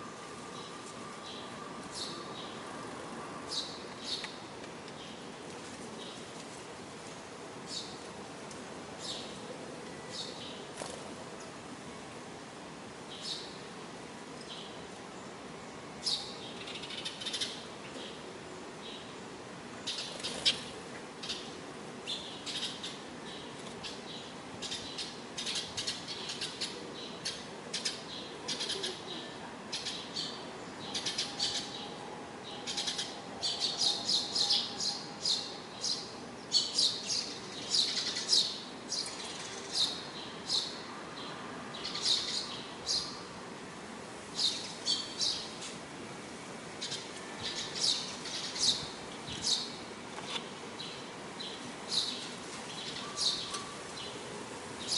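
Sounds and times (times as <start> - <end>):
sparrows chirping: 3.5 - 4.4, 7.7 - 8.0, 9.0 - 9.4, 10.0 - 10.7, 13.1 - 13.6, 16.0 - 18.2, 19.8 - 43.3, 44.4 - 45.7, 46.8 - 49.8, 50.8 - 54.2.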